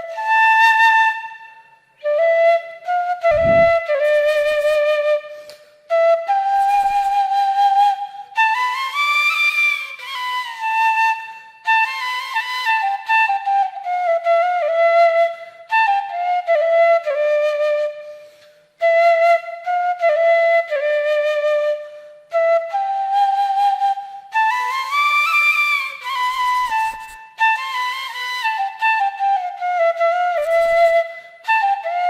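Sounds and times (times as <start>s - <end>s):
solo flute melody: 0.0s - 32.0s
flute player breathing: 3.3s - 4.6s, 5.2s - 5.9s, 18.0s - 18.8s, 21.8s - 22.3s, 31.0s - 31.5s.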